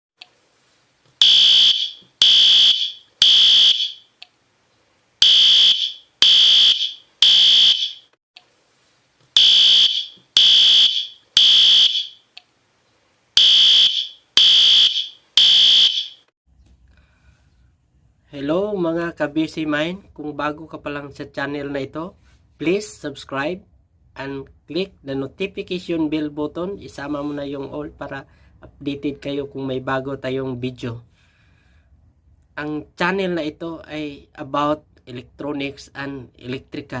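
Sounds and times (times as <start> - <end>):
fire alarm beeping: 1.2 - 4.1, 5.2 - 8.1, 9.4 - 12.2, 13.4 - 16.3.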